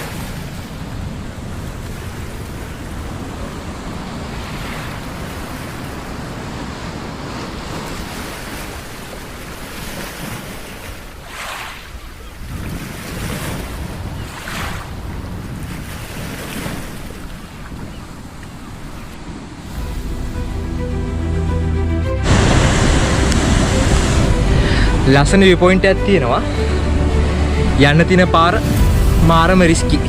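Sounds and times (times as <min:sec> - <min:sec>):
ocean surf breaking: 0:00.0 - 0:30.0
wind buffeting microphone: 0:11.9 - 0:20.4.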